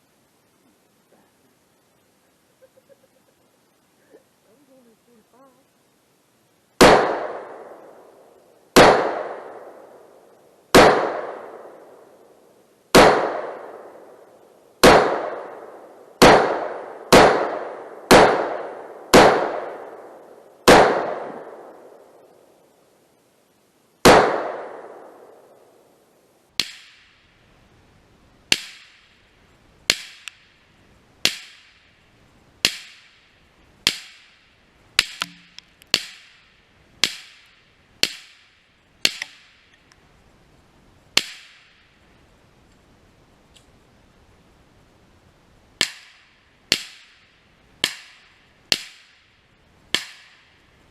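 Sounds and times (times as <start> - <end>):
gunshots echoing: 6.8 - 7.8, 8.8 - 9.7, 10.8 - 11.7, 13.0 - 13.9, 14.8 - 20.0, 20.7 - 21.7, 24.1 - 25.3
quick sharp gunshot cracks: 6.8 - 7.8, 8.8 - 9.5, 10.7 - 11.7, 13.0 - 13.8, 14.8 - 15.6, 24.0 - 25.1, 26.6 - 27.1, 49.9 - 50.5.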